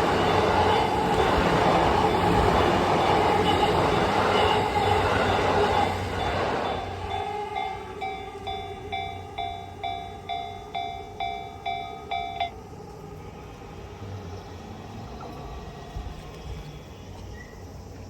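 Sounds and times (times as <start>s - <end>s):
level-crossing warning bell ringing: 0.0s - 12.9s.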